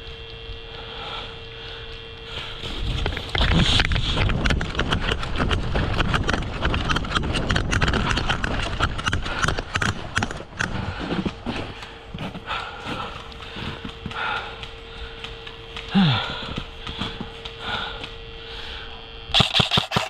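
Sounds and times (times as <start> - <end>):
fast running footsteps: 2.3 - 18.2
equipment rattling and knocking: 4.2 - 11.4.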